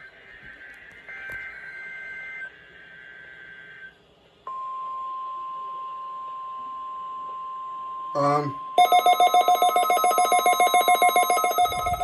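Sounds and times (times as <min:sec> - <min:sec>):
steady warning alarm tone: 0:08.2 - 0:12.0
two-tone data warble: 0:08.2 - 0:12.0.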